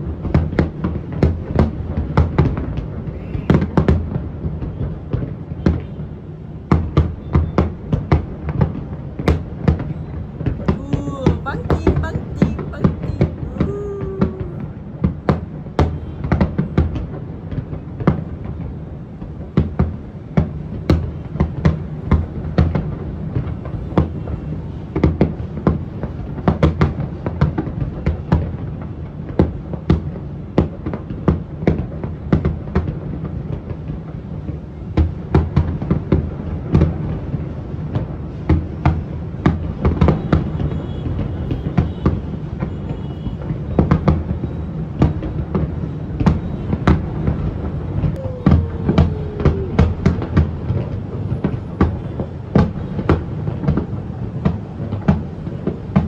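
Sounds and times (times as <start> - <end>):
fireworks bangs: 38.5 - 56.0.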